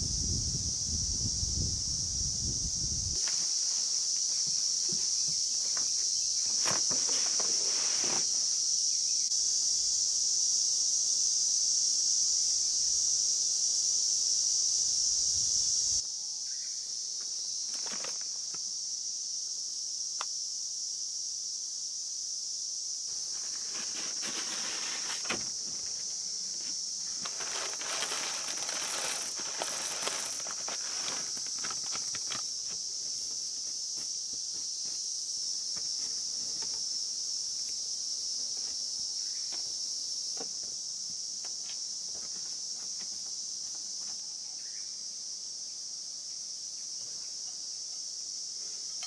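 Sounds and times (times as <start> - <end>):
insects chirring: 0.0 - 49.0
rustling in dry leaves: 6.4 - 8.4, 23.1 - 32.8.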